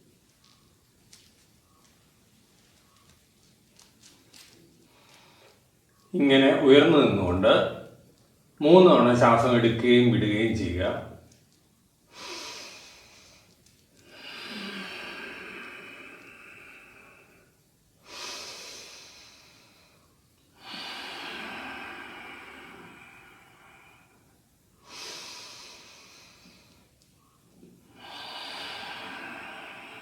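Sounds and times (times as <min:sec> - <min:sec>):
person breathing deeply: 0:12.1 - 0:26.9, 0:27.8 - 0:30.0.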